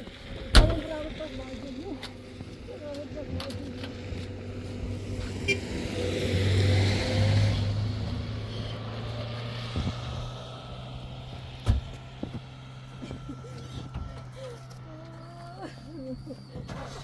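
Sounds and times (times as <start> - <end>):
motor humming: 8.0 - 17.0.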